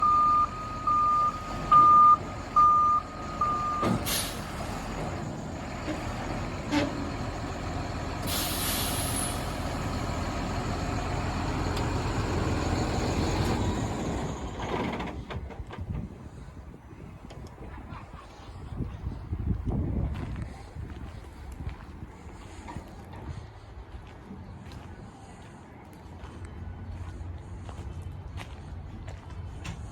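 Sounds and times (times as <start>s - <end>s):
backup alarm beeping: 0.0s - 4.1s
diesel engine running: 0.0s - 17.1s
air hiss: 8.2s - 9.6s.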